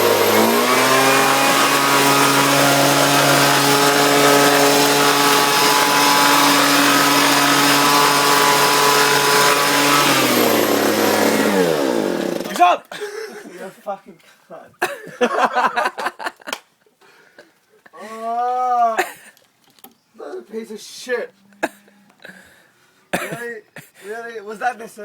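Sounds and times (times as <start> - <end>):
leaf blower engine running: 0.0 - 12.6.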